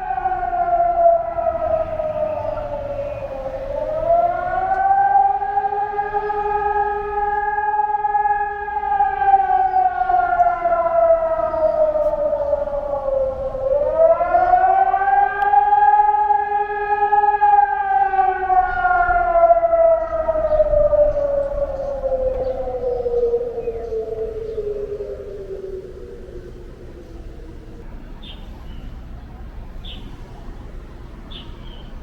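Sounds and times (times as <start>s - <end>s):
air raid siren wailing: 0.0s - 32.0s.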